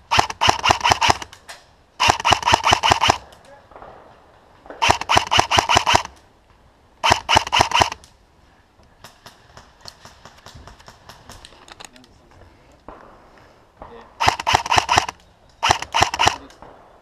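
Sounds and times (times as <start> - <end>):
airsoft gun firing full-auto bursts: 0.0 - 1.3, 2.0 - 3.2, 4.8 - 6.1, 7.0 - 8.0, 14.2 - 16.5
scattered airsoft shots: 0.0 - 1.4, 2.0 - 4.0, 4.7 - 6.2, 7.0 - 8.0, 13.8 - 16.9.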